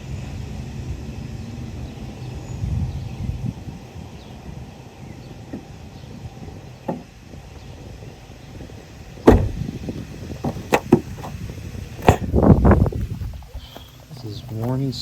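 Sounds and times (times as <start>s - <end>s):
sharp knocks and thumps: 9.2s - 9.6s, 10.4s - 11.4s, 12.0s - 12.3s.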